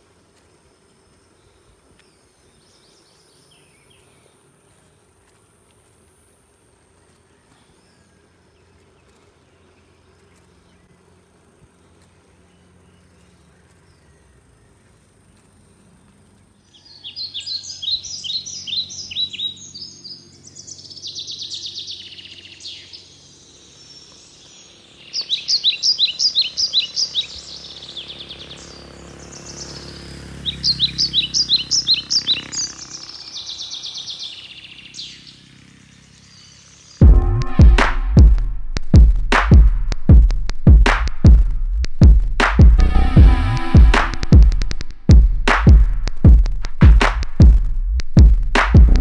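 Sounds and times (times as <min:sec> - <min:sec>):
songbird singing trills: 0:11.8 - 0:37.0.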